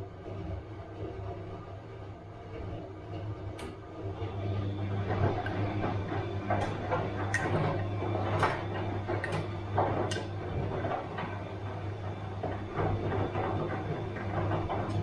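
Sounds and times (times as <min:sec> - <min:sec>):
washing machine motor hum: 0:00.0 - 0:15.0
washing machine drum knocking: 0:05.0 - 0:15.0.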